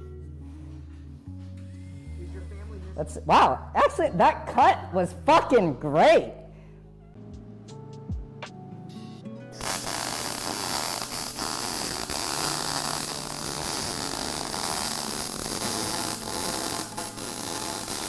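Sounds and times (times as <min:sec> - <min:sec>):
arc welder crackling hiss: 0:09.5 - 0:18.0.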